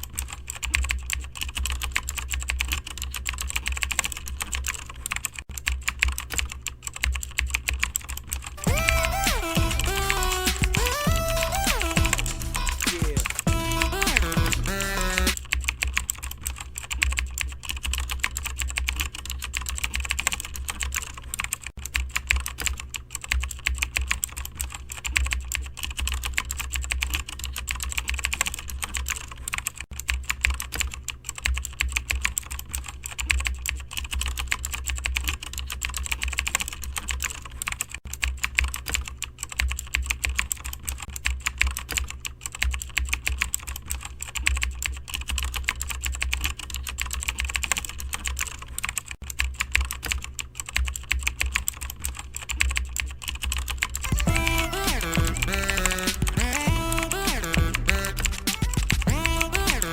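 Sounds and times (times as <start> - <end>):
rapid typing on keyboard: 0.0 - 59.9
steady low hum: 7.3 - 17.0, 54.0 - 59.9.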